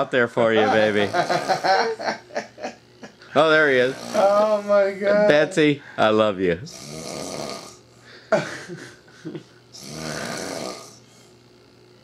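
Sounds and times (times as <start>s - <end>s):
man snoring: 0.6s - 2.0s, 3.6s - 5.0s, 6.6s - 7.9s, 9.7s - 11.1s.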